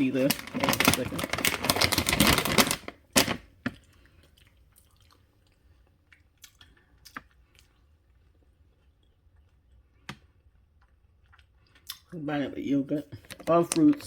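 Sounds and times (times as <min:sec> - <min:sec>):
cereal crunching: 0:00.0 - 0:03.8.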